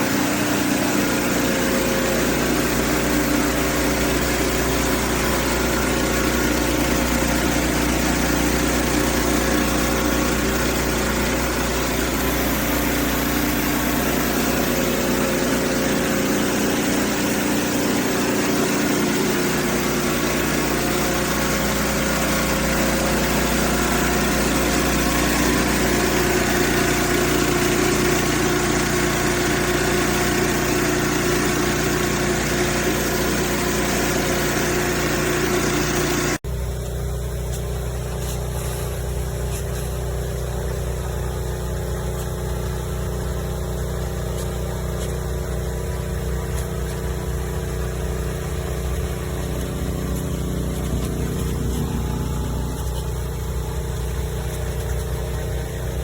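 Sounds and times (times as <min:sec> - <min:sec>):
pressure washer running: 0:00.0 - 0:56.0.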